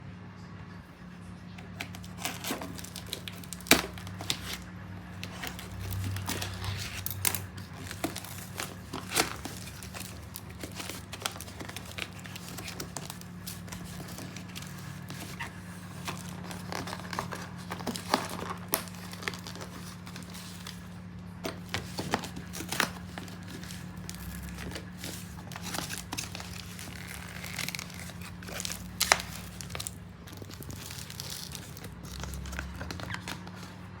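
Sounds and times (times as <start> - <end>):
packaging crumpling and tearing: 1.6 - 34.0.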